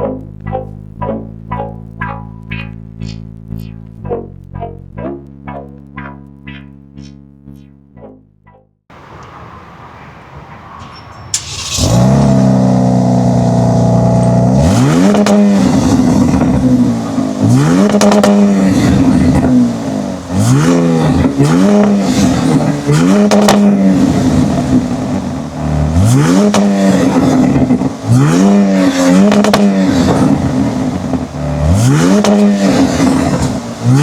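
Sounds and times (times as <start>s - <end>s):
car engine revving: 8.9s - 34.0s
exhaust crackles: 8.9s - 34.0s.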